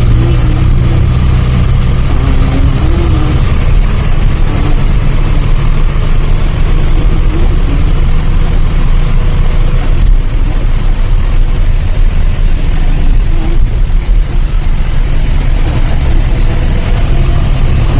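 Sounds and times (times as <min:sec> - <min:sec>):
truck engine rumbling: 0:00.0 - 0:17.9.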